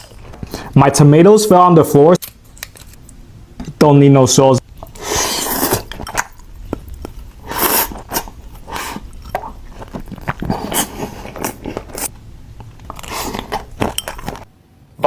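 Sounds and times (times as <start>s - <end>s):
person chewing food: 4.7s - 14.5s.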